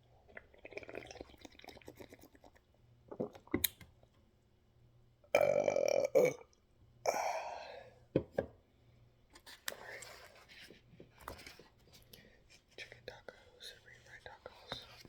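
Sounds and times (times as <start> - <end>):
person burping loudly: 5.3 - 6.5.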